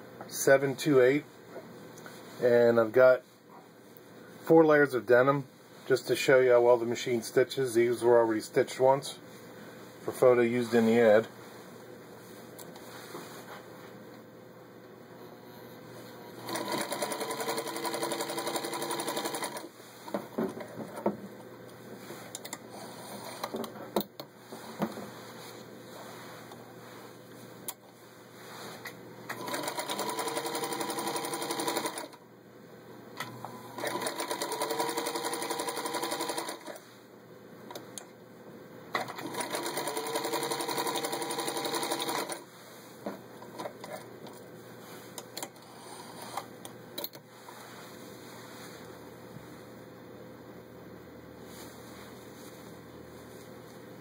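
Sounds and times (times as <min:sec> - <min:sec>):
sewing machine stitching: 0:16.4 - 0:19.7, 0:29.3 - 0:32.2, 0:33.7 - 0:36.8, 0:39.0 - 0:42.4.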